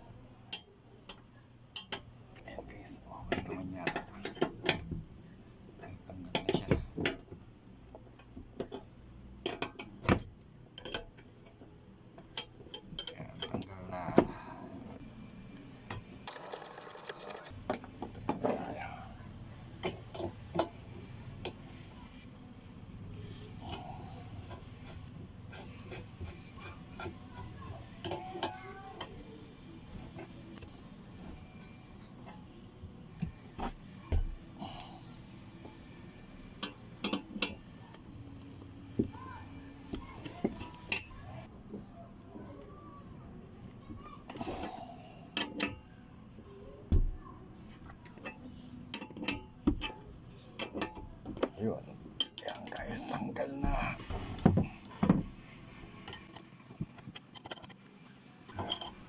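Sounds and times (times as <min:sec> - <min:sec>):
metal tools clicking and clinking: 0:10.8 - 0:11.6, 0:12.2 - 0:13.8, 0:36.6 - 0:37.7, 0:45.4 - 0:45.8, 0:47.8 - 0:51.4, 0:52.2 - 0:53.0, 0:56.1 - 0:57.9, 0:58.5 - 0:59.0
metal tools clinking: 0:58.5 - 0:59.0.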